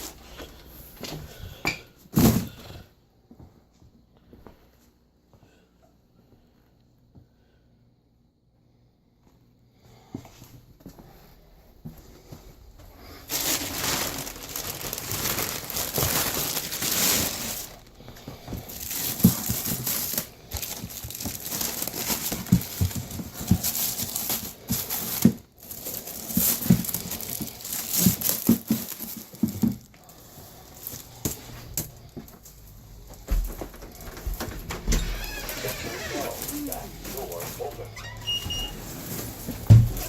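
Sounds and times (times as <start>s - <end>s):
crinkling and rustling: 11.8s - 40.0s.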